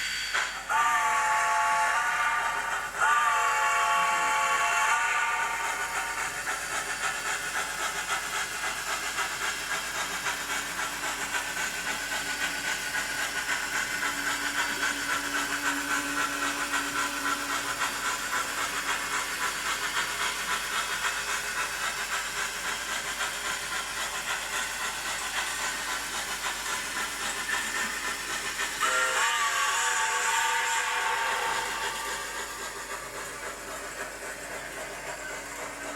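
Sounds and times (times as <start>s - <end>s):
hissing steam chuffs: 0.0s - 35.9s
steam whistle blowing: 0.4s - 6.4s, 28.8s - 32.6s.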